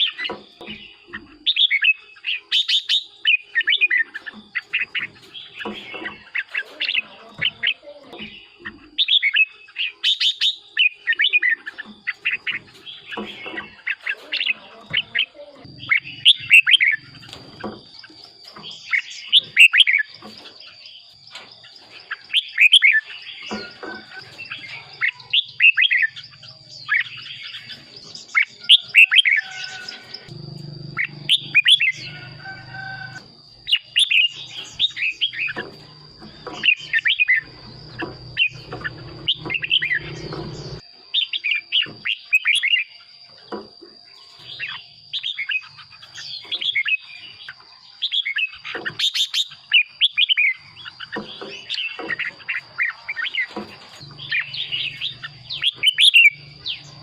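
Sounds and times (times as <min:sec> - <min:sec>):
steady high-pitched whine: 0:08.3 - 0:49.0.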